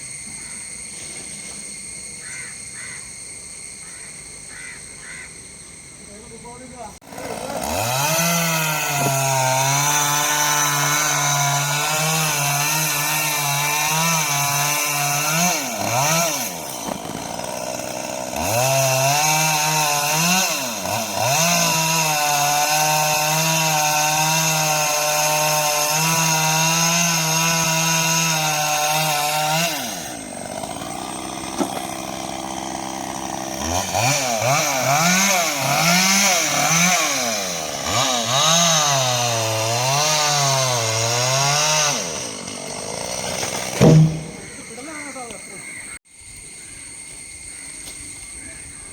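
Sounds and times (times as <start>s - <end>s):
chainsaw cutting wood: 7.0s - 45.4s.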